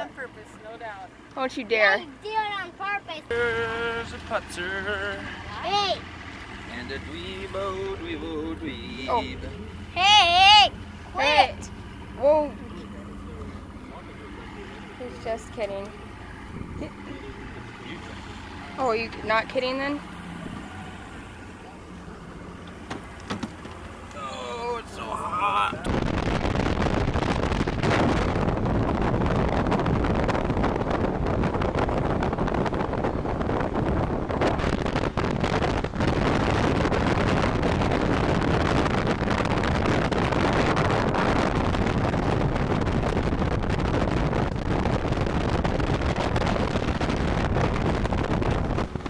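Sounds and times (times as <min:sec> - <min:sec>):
boat running noise: 0:00.0 - 0:49.0
wind rushing over microphone: 0:13.5 - 0:49.0.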